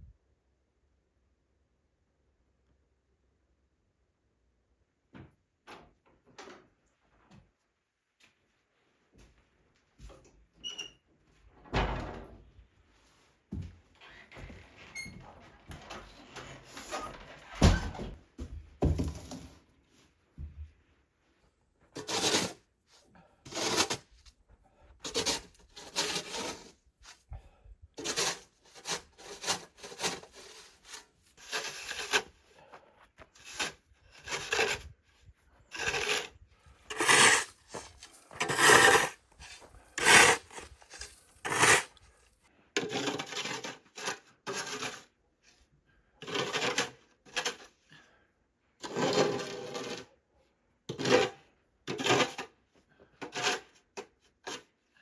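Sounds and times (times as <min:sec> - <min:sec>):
snow shovel scraping snow: 0:22.0 - 0:22.6, 0:23.5 - 0:24.1, 0:25.1 - 0:26.8, 0:28.0 - 0:32.3, 0:35.8 - 0:36.3, 0:36.9 - 0:42.0.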